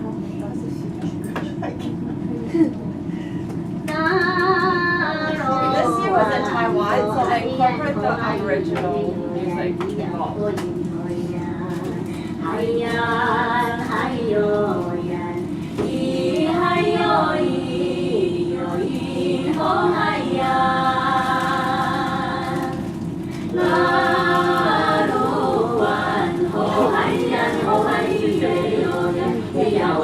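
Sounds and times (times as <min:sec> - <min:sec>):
choir singing over loudspeaker: 0:12.4 - 0:30.0.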